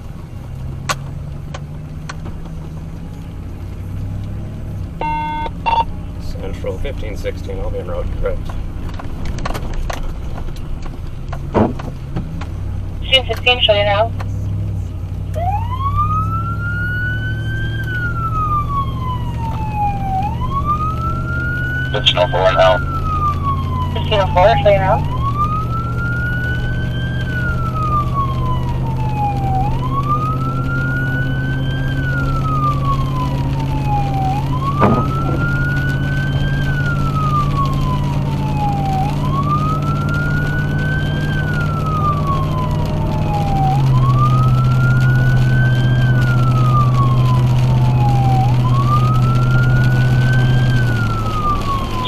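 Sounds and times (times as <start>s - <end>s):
road noise: 0.0s - 52.0s
vehicle engine drone: 0.0s - 52.0s
siren wailing: 5.0s - 5.9s, 15.4s - 52.0s.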